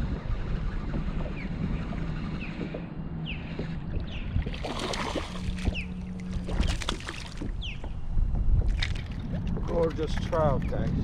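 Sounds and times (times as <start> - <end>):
water lapping on kayak: 0.0 - 10.3
wind rumble on microphone: 0.0 - 11.0
splashing: 4.5 - 7.6.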